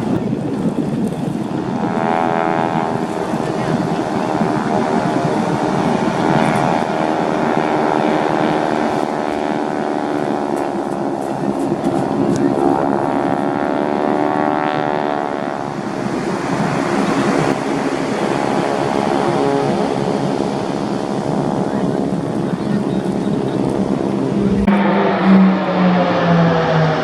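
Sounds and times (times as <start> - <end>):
propeller aircraft engine flypast: 0.0 - 27.0.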